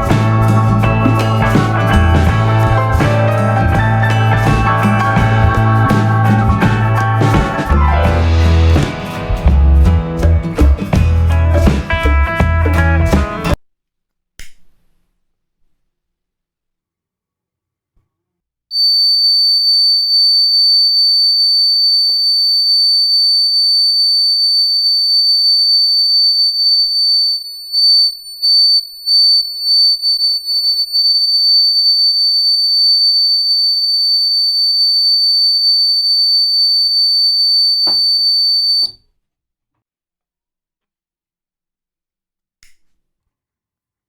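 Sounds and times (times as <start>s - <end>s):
high-pitched alarm buzzer: 18.7s - 39.0s.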